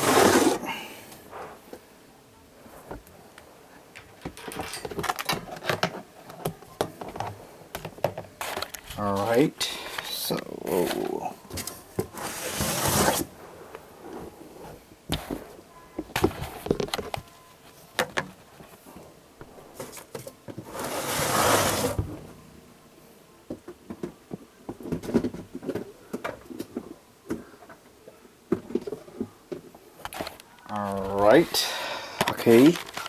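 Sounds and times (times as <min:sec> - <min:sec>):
plastic tub scraping slide: 0:00.0 - 0:01.6, 0:12.1 - 0:13.4, 0:20.7 - 0:22.0.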